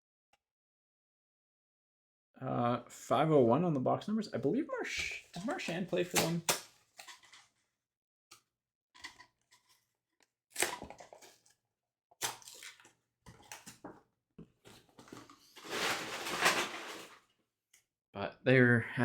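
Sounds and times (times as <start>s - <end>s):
card packs crinkling and rustling: 5.0s - 7.4s, 10.6s - 11.5s, 12.2s - 14.0s, 14.7s - 17.2s.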